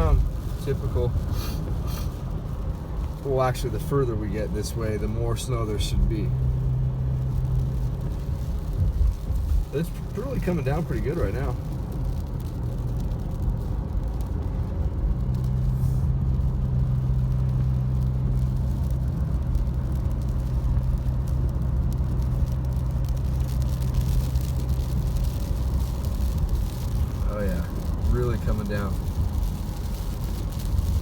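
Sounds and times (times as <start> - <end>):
car engine and road drone: 0.0 - 31.0.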